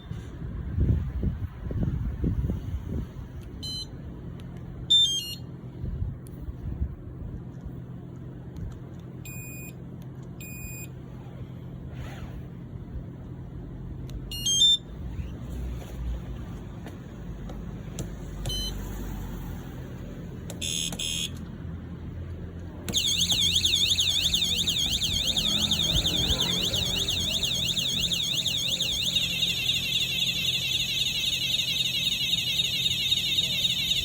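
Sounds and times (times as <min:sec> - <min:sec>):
alarm siren sweeping in pitch: 0:22.9 - 0:34.0
electronic alarm chirp: 0:22.9 - 0:34.0.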